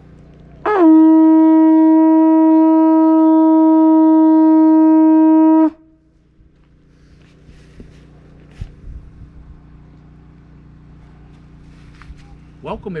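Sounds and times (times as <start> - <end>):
conch shell trumpet note: 0.6 - 6.1.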